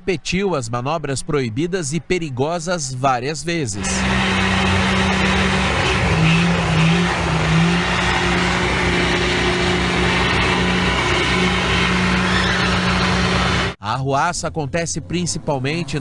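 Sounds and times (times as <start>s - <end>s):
background noise: 0.0s - 3.8s
pickup truck engine revving: 3.8s - 13.8s.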